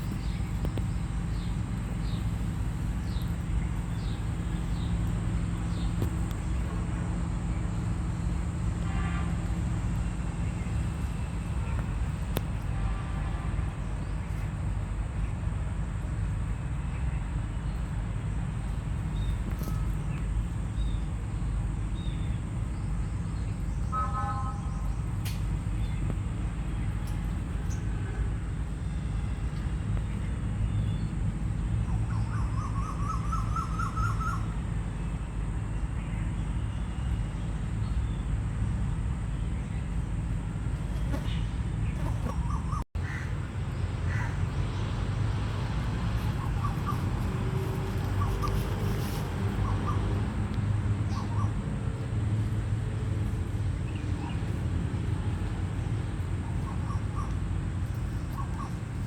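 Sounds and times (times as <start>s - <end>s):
faint bird calls: 40.8s - 43.4s, 46.2s - 50.5s, 56.4s - 59.0s.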